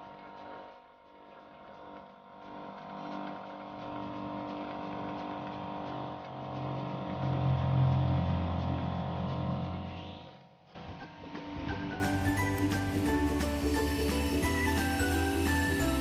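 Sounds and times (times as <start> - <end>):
small electric pump motor humming: 0.0 - 10.6, 12.0 - 16.0
loud low hum: 2.4 - 10.7.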